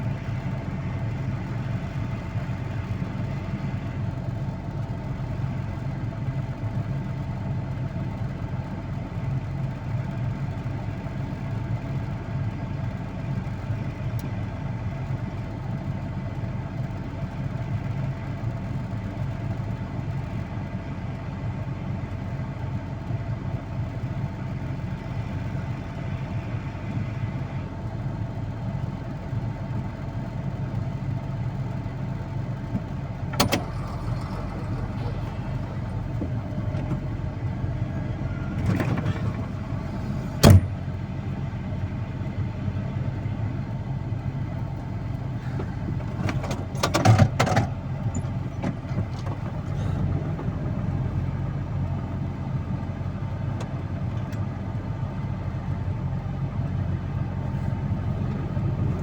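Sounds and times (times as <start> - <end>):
vehicle engine humming: 0.0 - 59.0.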